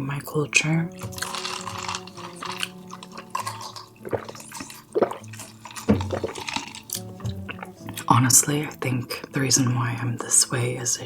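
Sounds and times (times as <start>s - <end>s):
wet chewing mouth sounds: 1.0s - 8.1s.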